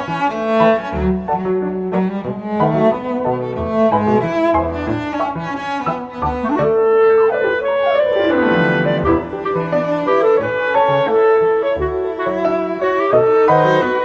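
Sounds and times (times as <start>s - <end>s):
instrumental background music: 0.0s - 14.0s
long downward pitch slide: 0.6s - 14.0s.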